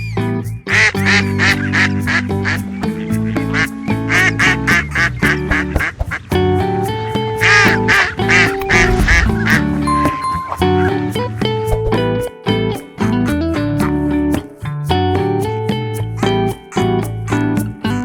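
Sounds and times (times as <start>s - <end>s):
background music with held notes: 0.0s - 18.0s
ducks quacking: 0.7s - 6.5s, 7.4s - 9.7s.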